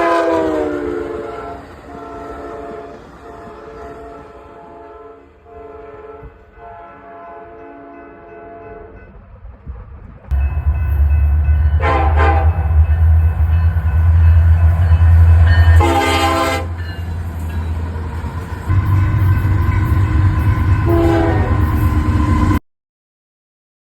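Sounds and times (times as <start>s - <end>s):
train horn blasts: 0.0s - 9.1s, 10.3s - 17.2s, 18.7s - 22.6s
low rumble of train: 0.0s - 22.6s.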